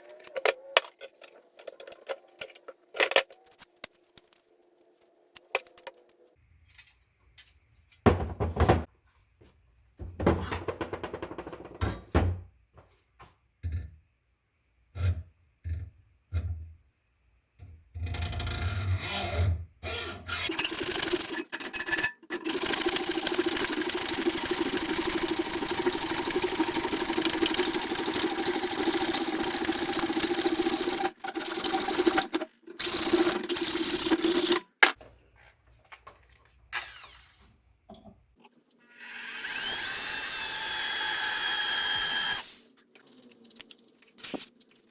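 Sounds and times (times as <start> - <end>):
knocks and clatter: 8.1 - 8.9, 10.0 - 12.9.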